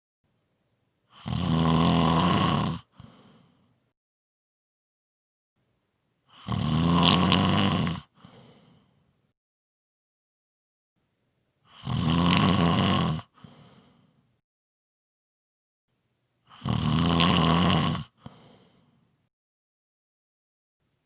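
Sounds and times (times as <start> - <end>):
person snoring heavily: 1.1 - 3.6, 6.3 - 8.9, 11.7 - 14.0, 16.5 - 18.9.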